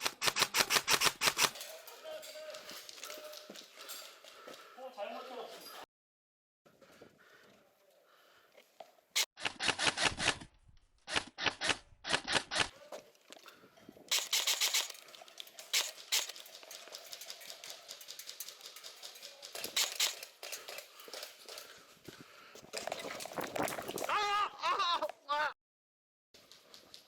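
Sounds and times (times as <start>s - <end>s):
airsoft guns firing full-auto: 14.1s - 15.0s.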